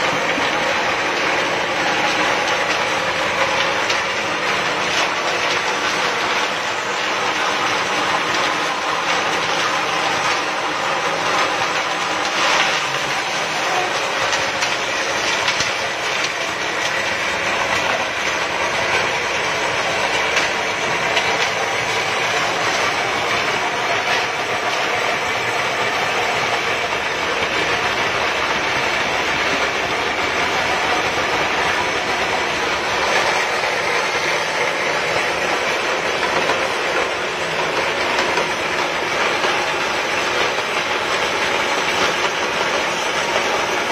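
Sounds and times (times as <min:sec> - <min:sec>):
machine clattering: 0:00.0 - 0:43.9.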